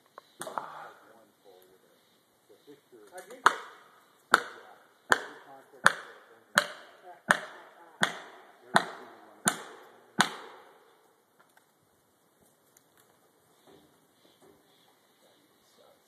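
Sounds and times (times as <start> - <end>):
axe chopping a tree: 3.3 - 10.7.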